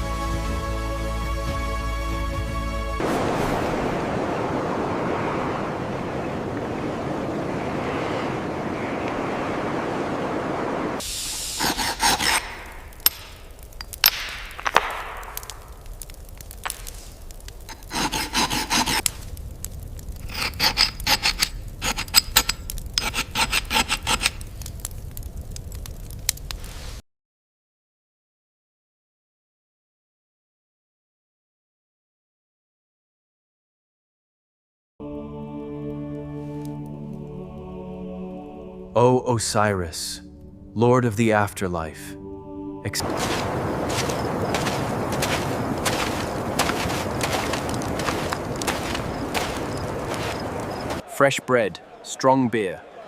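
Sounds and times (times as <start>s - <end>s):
steady rushing noise: 3.0s - 11.7s, 43.0s - 51.1s
short scrapes rubs and clinks: 11.6s - 13.9s, 17.7s - 19.0s, 20.3s - 24.4s.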